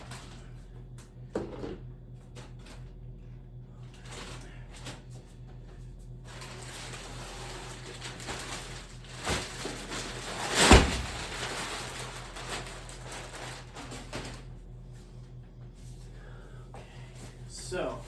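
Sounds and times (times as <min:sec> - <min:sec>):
canvas and packaging rustling: 0:06.3 - 0:14.5
rustling thump: 0:07.2 - 0:14.4.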